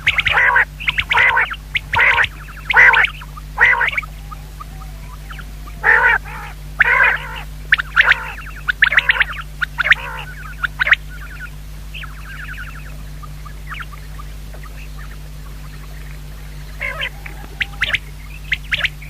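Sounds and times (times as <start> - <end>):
quail calling raspy calls: 0.0 - 19.0
sharp bird chirps: 0.0 - 19.0.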